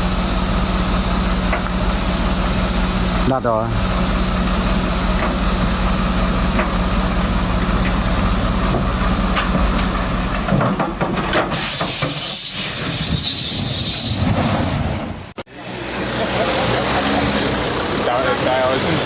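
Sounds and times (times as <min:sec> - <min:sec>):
engine humming: 0:00.0 - 0:11.6, 0:14.0 - 0:19.0
loud hiss: 0:11.5 - 0:14.8.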